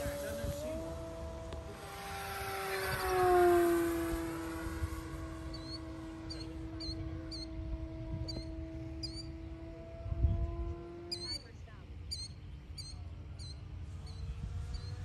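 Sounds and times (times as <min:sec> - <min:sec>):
electric model plane motor whining: 0:00.0 - 0:11.5, 0:13.4 - 0:15.0
bird chirping: 0:05.3 - 0:07.6, 0:08.2 - 0:15.0.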